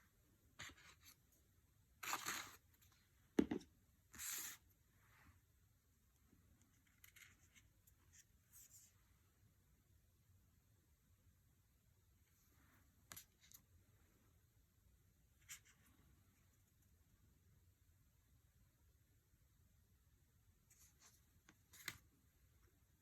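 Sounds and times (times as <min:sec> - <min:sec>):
cards rustling and sliding: 0:02.0 - 0:02.9, 0:20.9 - 0:22.1.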